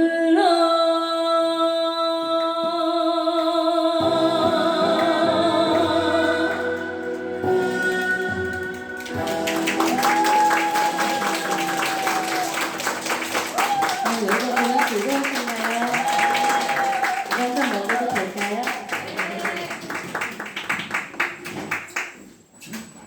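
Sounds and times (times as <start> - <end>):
person singing with vibrato: 0.0 - 13.0
instrumental backing music: 4.0 - 14.5
audience applause: 4.9 - 22.2.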